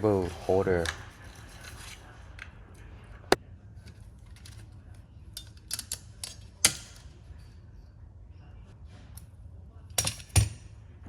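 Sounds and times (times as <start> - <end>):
metallic clicks of tools and hardware: 5.3 - 7.1.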